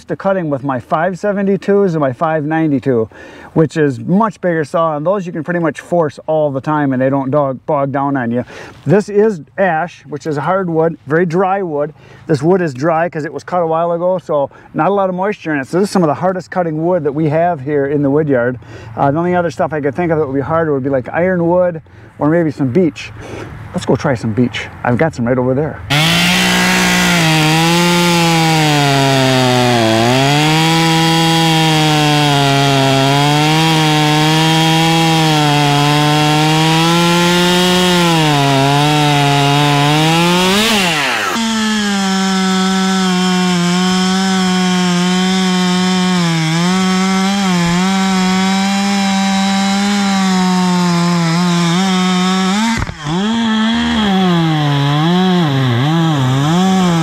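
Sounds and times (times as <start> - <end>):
chainsaw cutting wood: 25.9 - 57.0.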